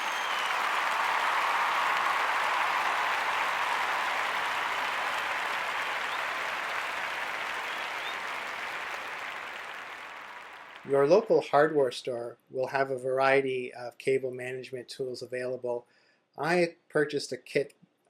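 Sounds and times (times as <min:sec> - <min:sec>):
crowd applause: 0:00.0 - 0:11.3.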